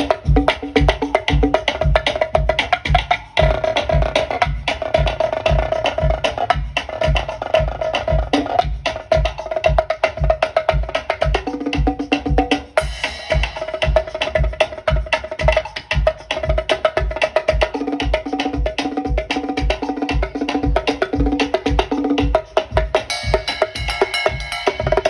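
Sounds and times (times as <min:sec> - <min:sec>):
drum kit groove: 0:00.0 - 0:25.0
cymbal crash: 0:12.8 - 0:14.8, 0:23.1 - 0:25.0
held pitched tone and notes: 0:23.1 - 0:25.0.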